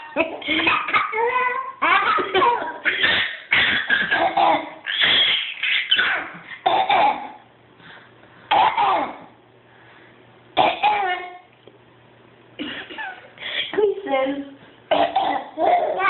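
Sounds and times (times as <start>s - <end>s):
people coughing: 2.1s - 5.3s, 5.9s - 7.3s, 8.5s - 9.2s, 12.6s - 13.3s.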